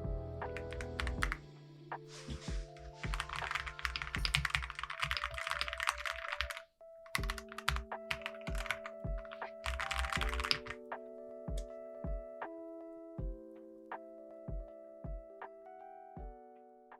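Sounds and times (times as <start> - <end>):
soft background music: 0.0 - 16.9
mechanical keyboard typing: 0.6 - 1.4, 3.0 - 10.8.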